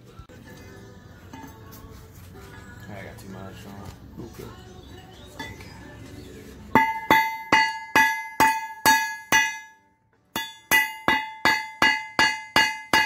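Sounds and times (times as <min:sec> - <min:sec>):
hammer striking steel: 0:06.7 - 0:13.0.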